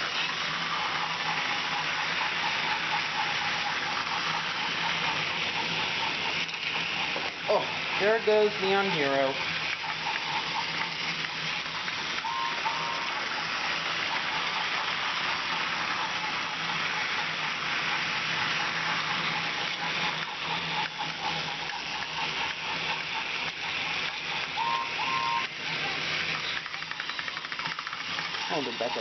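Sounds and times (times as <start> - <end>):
toy train motor whir: 0.0 - 29.0
wheels hissing on plastic rails: 0.0 - 29.0
short high beeps: 12.3 - 13.1.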